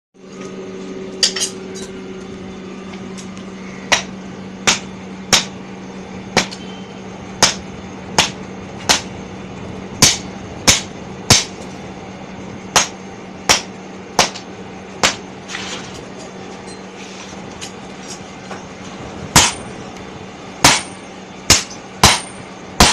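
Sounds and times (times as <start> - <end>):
steady low hum: 0.2 - 22.9
hammer striking steel on anvil: 3.9 - 5.6, 10.0 - 11.6, 12.7 - 14.4, 15.0 - 15.2, 19.3 - 19.7, 20.6 - 22.9.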